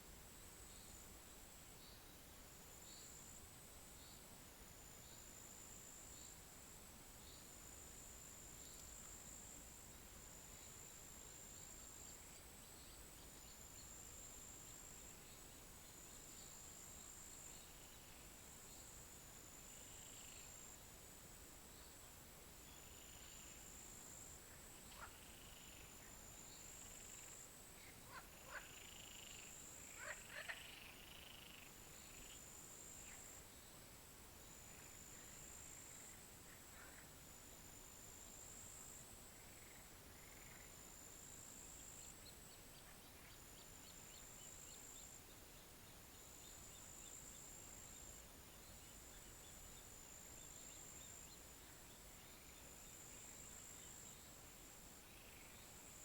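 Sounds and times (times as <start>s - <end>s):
frogs croaking: 22.7s - 33.4s, 39.4s - 42.1s.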